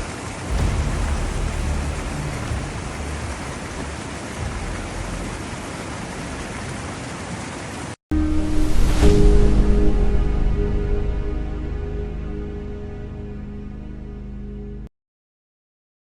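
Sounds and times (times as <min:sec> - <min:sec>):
low rumble: 0:00.0 - 0:07.0, 0:08.2 - 0:14.9
heavy rain pouring: 0:00.0 - 0:08.0
music: 0:00.5 - 0:05.7, 0:08.1 - 0:14.9.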